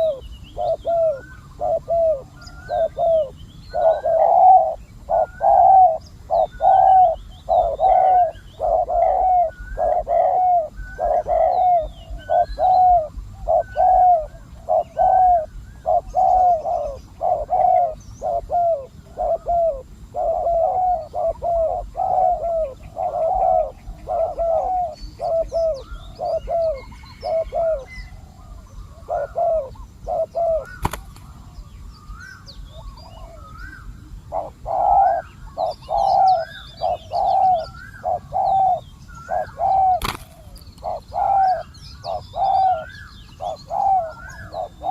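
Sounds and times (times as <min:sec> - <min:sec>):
doves cooing: 0:00.0 - 0:44.9
small birds chirping: 0:00.0 - 0:44.9.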